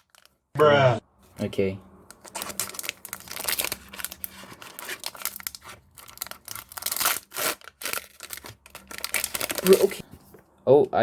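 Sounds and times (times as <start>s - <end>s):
foil wrapper crinkling and tearing: 0.0s - 0.3s, 2.1s - 10.0s.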